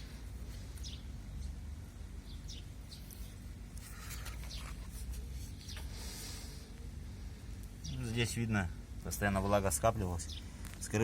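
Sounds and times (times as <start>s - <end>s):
hands rubbing and scuffing parts: 2.9s - 6.0s.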